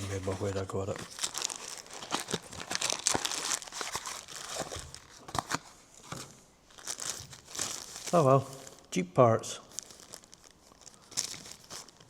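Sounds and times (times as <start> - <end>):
plastic packaging crinkling: 0.0 - 8.9, 9.6 - 12.0.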